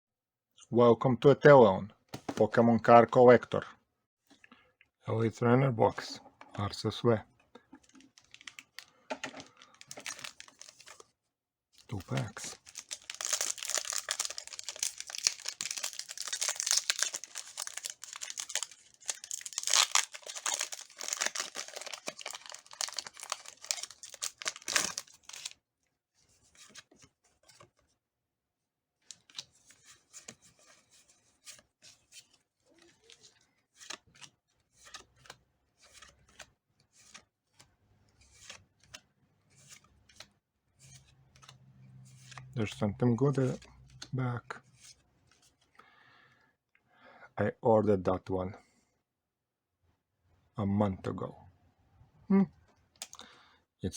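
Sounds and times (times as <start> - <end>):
foil wrapper tearing and crinkling: 8.2 - 8.8, 9.4 - 11.0, 12.2 - 25.6.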